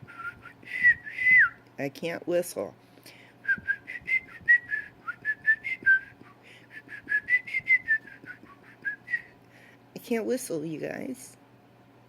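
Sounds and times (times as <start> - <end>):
woman whistling a slow tune: 0.0 - 1.6, 3.4 - 9.4
woman speaking: 1.8 - 2.8, 10.0 - 11.4.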